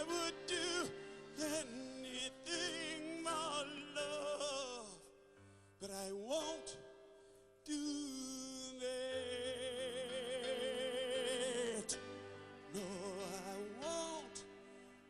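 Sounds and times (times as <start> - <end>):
sustained musical accompaniment: 0.0 - 5.0, 8.9 - 15.0
person singing with vibrato: 0.0 - 5.2, 5.8 - 14.8.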